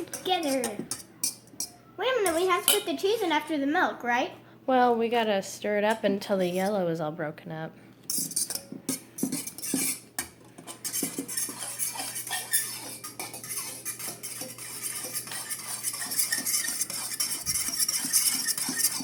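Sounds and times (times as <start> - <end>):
utensil clinking and scraping bowl: 0.0 - 3.0, 8.0 - 19.0.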